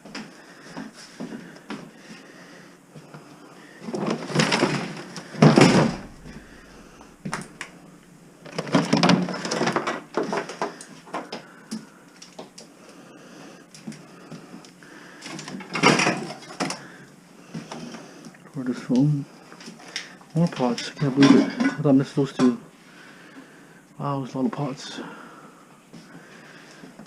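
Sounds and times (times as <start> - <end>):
household clutter rummaged through: 3.8 - 6.5
sharp knocks: 5.5 - 7.7.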